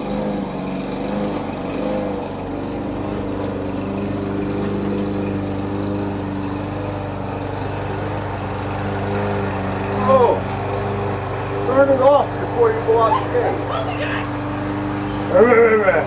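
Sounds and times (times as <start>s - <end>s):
lawn mower engine running: 0.0s - 16.0s.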